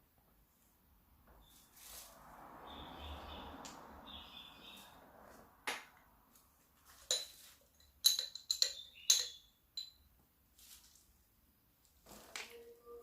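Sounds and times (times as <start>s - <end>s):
hard objects clinking and knocking: 7.0s - 10.1s.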